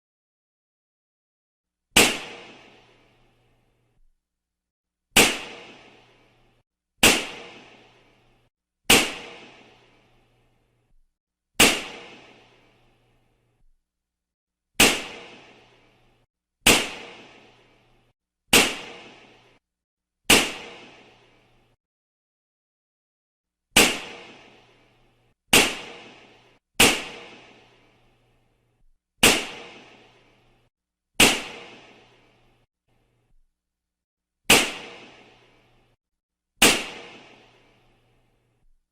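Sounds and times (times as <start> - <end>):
balloons bursting: 18.5 - 19.2, 25.5 - 26.2.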